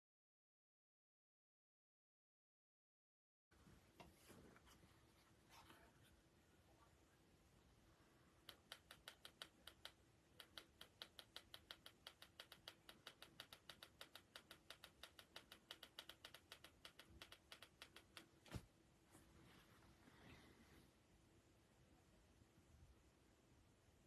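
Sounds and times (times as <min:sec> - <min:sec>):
faint steady hum: 0:03.5 - 0:24.0
rapid even clicking: 0:08.4 - 0:18.5.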